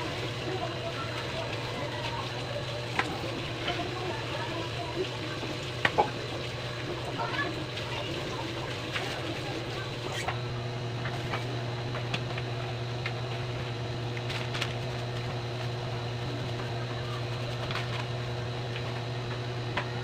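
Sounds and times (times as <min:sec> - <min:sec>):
low machine hum: 0:00.0 - 0:20.0.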